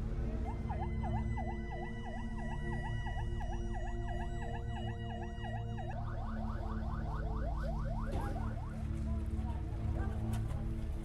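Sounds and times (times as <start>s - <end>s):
emergency vehicle siren: 0.0s - 11.0s
low steady drone: 0.0s - 11.0s.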